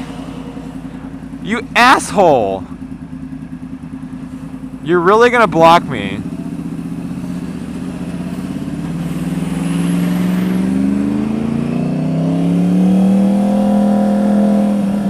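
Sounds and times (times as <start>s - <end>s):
motorcycle engine pulling away: 6.2s - 15.0s.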